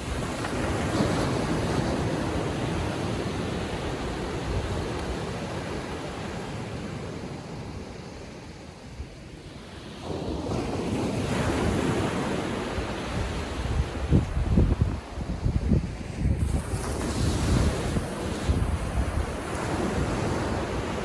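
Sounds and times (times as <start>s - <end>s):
ocean waves breaking: 0.0s - 8.7s, 16.0s - 21.0s
wind buffeting microphone: 10.0s - 21.0s.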